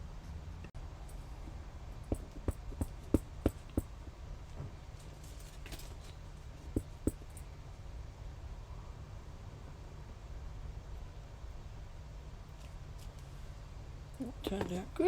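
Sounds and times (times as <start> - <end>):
stamping tools tapping on tabletop: 2.1 - 3.9.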